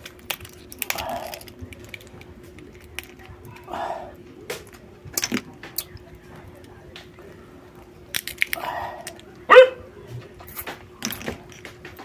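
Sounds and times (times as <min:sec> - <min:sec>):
chewing and smacking: 0:00.0 - 0:03.7
shell cracking: 0:00.0 - 0:03.7, 0:04.4 - 0:07.4, 0:08.0 - 0:09.4.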